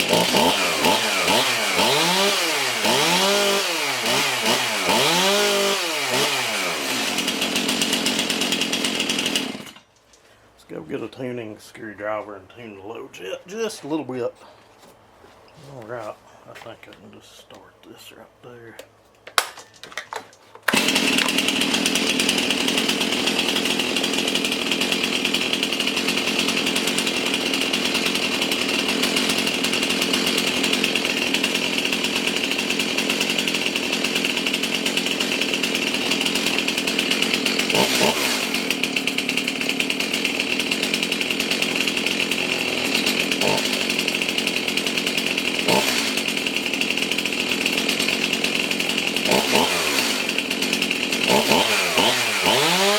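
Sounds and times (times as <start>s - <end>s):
chainsaw engine running: 0.0s - 9.9s, 20.7s - 52.9s.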